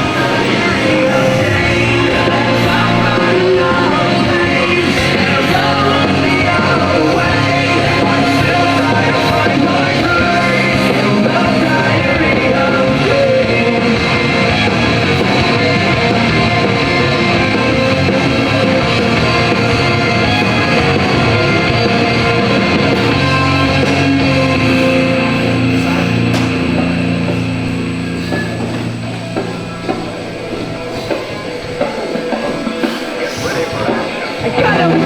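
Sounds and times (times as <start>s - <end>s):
rock music with singing: 0.0s - 35.0s.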